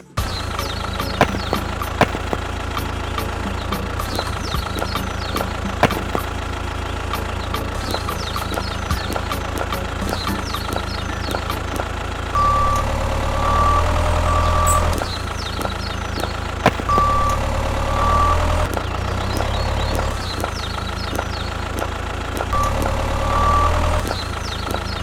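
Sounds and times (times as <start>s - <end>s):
ticking and chirping background: 0.3s - 25.0s
short electronic beeps: 12.4s - 15.0s, 16.8s - 18.7s.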